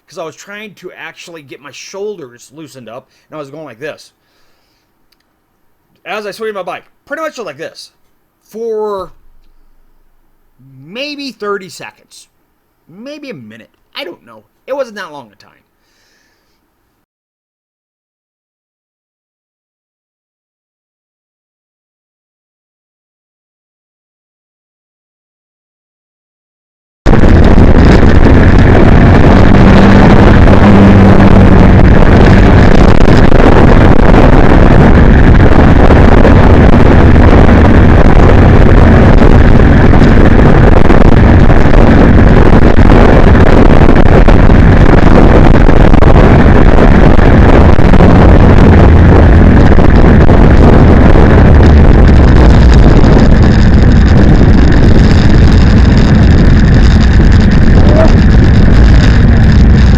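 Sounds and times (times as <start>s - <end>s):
motorcycle engine drone: 9.1s - 10.7s, 27.1s - 59.9s
wind rushing over microphone: 27.1s - 59.9s.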